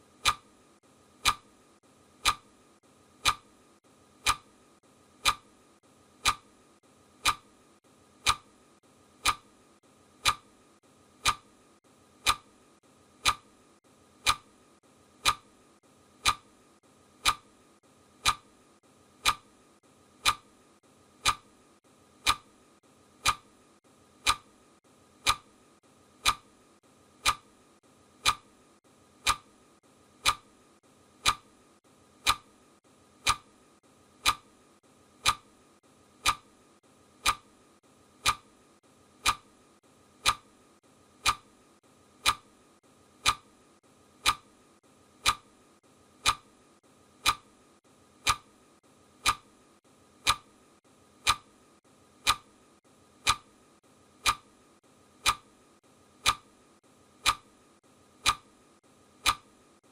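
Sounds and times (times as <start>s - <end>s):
clock ticking: 0.1s - 0.6s, 1.2s - 1.6s, 2.2s - 2.6s, 3.2s - 3.6s, 4.2s - 4.5s, 5.1s - 6.6s, 7.2s - 7.5s, 8.2s - 8.6s, 9.2s - 9.5s, 10.2s - 10.5s, 11.2s - 11.5s, 12.2s - 12.6s, 13.2s - 13.5s, 14.2s - 14.6s, 15.2s - 15.5s, 16.2s - 16.5s, 17.2s - 17.5s, 18.2s - 18.5s, 19.2s - 19.5s, 20.2s - 20.5s, 21.2s - 21.5s, 22.2s - 22.6s, 23.2s - 23.6s, 24.2s - 24.6s, 25.2s - 25.6s, 26.2s - 26.6s, 27.2s - 27.6s, 28.2s - 28.6s, 29.2s - 29.6s, 30.2s - 30.6s, 31.2s - 31.5s, 32.2s - 32.6s, 33.2s - 33.6s, 34.2s - 34.5s, 35.2s - 35.5s, 36.2s - 36.5s, 37.2s - 37.5s, 38.2s - 38.5s, 39.2s - 39.5s, 40.2s - 40.6s, 41.2s - 41.5s, 42.2s - 42.6s, 43.2s - 43.6s, 44.2s - 44.6s, 45.2s - 45.6s, 46.2s - 46.5s, 47.2s - 47.5s, 48.2s - 48.5s, 49.2s - 49.5s, 50.2s - 50.5s, 51.2s - 51.5s, 52.2s - 52.5s, 53.2s - 53.5s, 54.2s - 54.5s, 55.2s - 55.5s, 56.2s - 56.5s, 57.2s - 57.5s, 58.2s - 58.6s, 59.2s - 59.9s.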